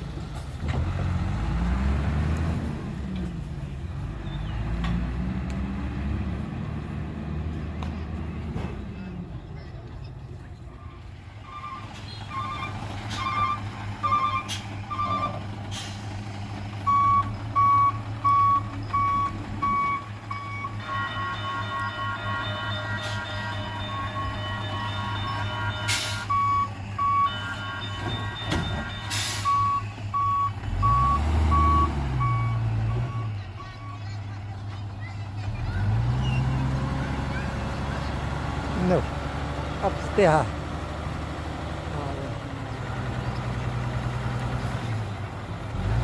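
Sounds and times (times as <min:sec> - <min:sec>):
truck engine running: 0:05.0 - 0:46.0
truck reversing alarm beeping: 0:11.4 - 0:16.0, 0:16.8 - 0:34.3.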